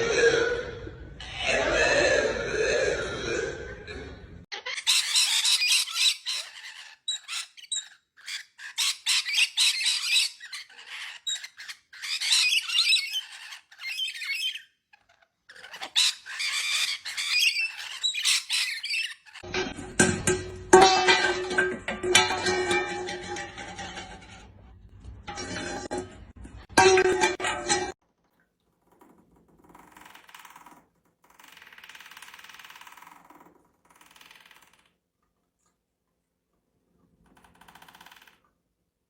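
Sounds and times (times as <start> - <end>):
bird squawking: 4.6 - 19.5.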